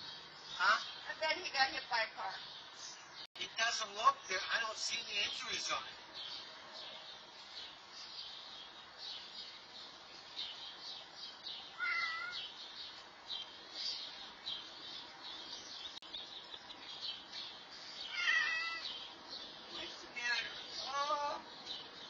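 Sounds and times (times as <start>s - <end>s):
cat meow: 11.8s - 12.5s, 18.1s - 19.0s.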